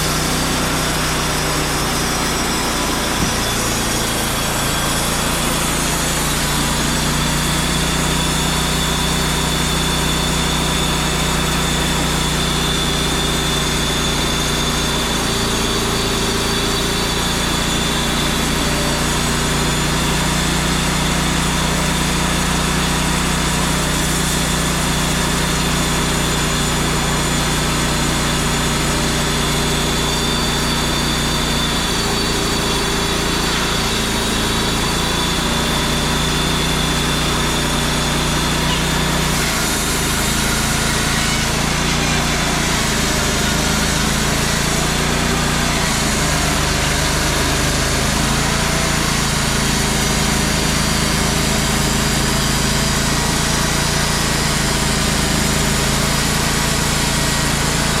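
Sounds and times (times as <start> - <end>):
sawmill engine running: 0.0 - 58.0.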